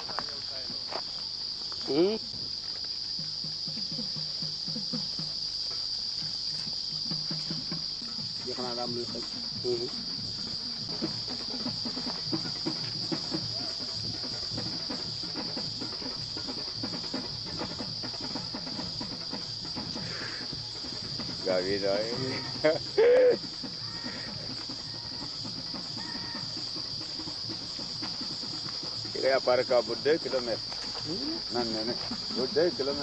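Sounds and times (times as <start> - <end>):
high-pitched insect chorus: 0.0 - 33.0.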